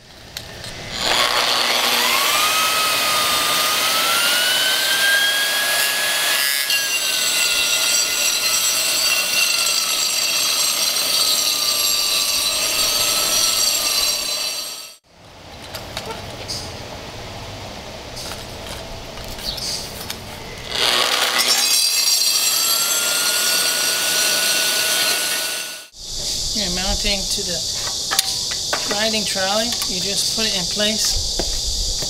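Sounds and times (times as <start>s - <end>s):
concrete grinder motor whine: 0.7s - 6.4s
harsh grinding rasp: 0.7s - 15.0s.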